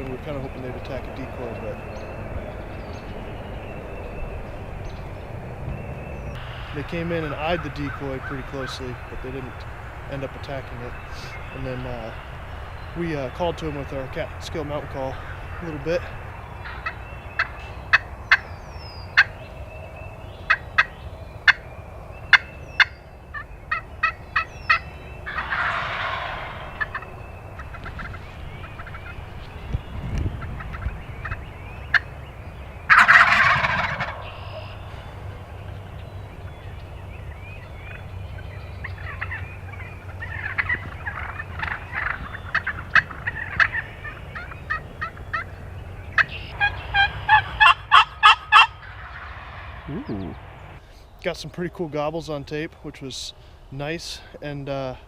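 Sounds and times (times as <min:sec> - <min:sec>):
sharp turkey calling notes: 0:00.0 - 0:51.3
turkey gobbling: 0:06.4 - 0:18.5, 0:19.1 - 0:19.5, 0:20.4 - 0:29.2, 0:30.5 - 0:32.2, 0:32.9 - 0:50.7.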